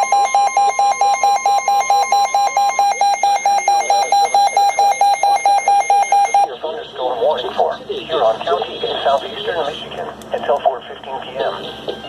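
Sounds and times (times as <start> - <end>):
rapid alarm beeps: 0.0 - 6.5
steady warning alarm tone: 0.0 - 6.6.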